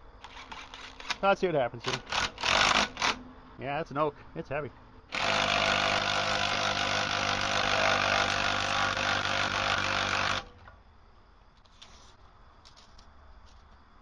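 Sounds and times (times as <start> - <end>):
power tool rattling buzz: 1.8 - 3.2, 5.1 - 10.7.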